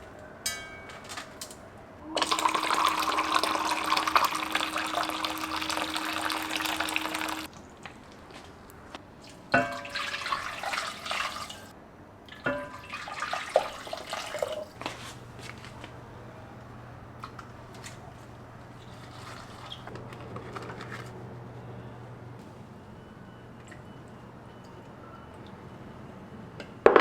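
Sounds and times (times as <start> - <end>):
steady low hum: 14.8 - 26.8.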